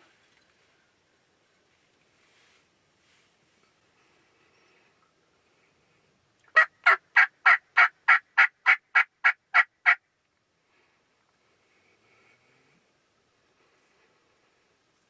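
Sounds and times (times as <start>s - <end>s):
turkey yelping: 6.5s - 10.0s.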